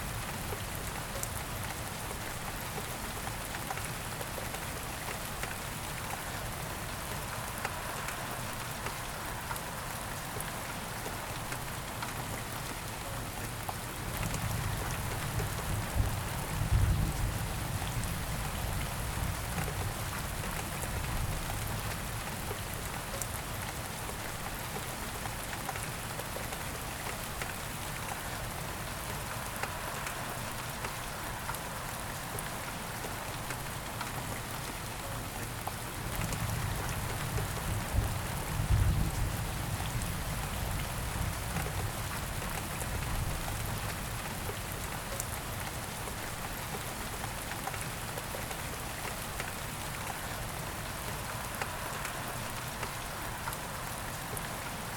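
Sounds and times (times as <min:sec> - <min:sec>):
rain pattering on a surface: 0:00.0 - 0:54.9.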